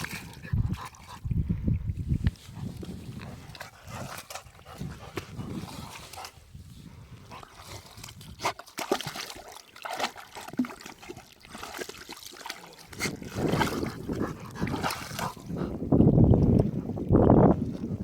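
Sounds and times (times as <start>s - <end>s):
small water splashes: 7.3s - 18.0s.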